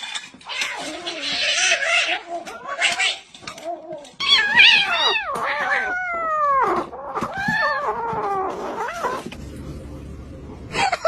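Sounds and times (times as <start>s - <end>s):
cat meowing: 4.2s - 9.2s.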